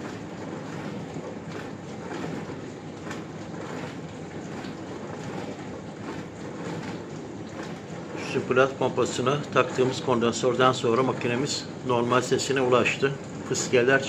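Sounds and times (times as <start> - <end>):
dishwasher pump running: 0.0 - 14.0
water spraying inside tub: 0.0 - 14.0.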